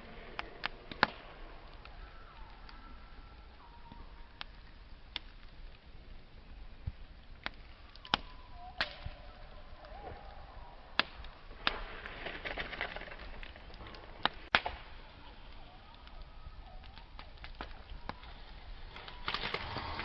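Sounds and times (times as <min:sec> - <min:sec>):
campfire crackling and popping: 0:00.0 - 0:20.0
faint wavering whistle: 0:01.9 - 0:04.4, 0:08.0 - 0:10.9.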